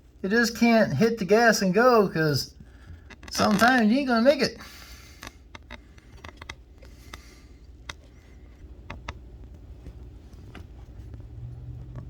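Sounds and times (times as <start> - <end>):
low outdoor rumble: 4.6 - 12.0
vehicle engine humming: 11.0 - 12.0.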